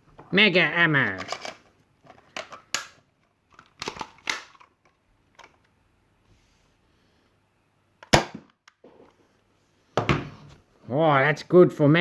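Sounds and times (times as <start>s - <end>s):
toy blaster firing pop: 8.1s - 8.5s.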